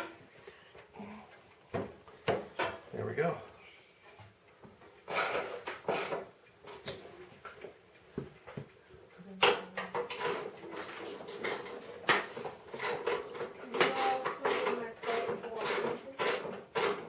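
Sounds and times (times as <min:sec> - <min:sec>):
hand tools clicking and knocking: 0:04.7 - 0:07.7, 0:09.4 - 0:17.0.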